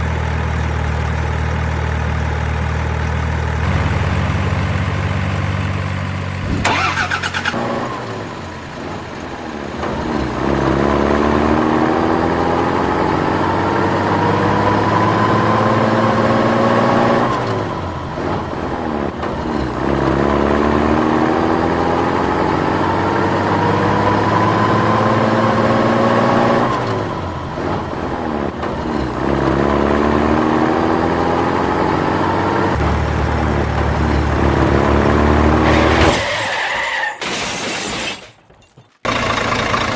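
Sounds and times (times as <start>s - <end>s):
vehicle engine revving: 9.8s - 36.2s.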